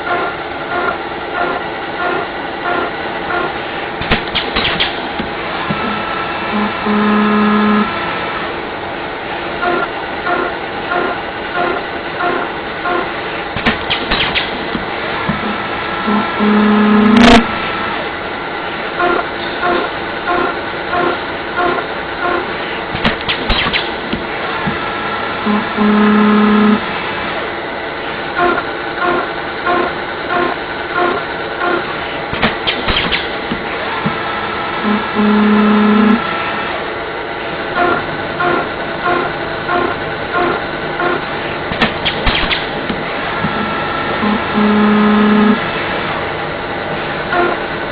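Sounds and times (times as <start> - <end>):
machine shop noise: 0.0 - 47.9
steady hum: 0.0 - 47.9
loud buzz-like tone: 4.9 - 8.4, 15.2 - 18.1, 24.4 - 27.5, 33.7 - 37.0, 37.7 - 41.7, 42.6 - 46.3, 47.0 - 47.8
lathe running: 5.0 - 13.6, 14.6 - 23.0, 24.0 - 32.4, 33.3 - 47.9
short repeating tones: 5.8 - 7.9, 15.4 - 17.5, 25.4 - 26.8, 34.8 - 36.2, 43.6 - 45.6.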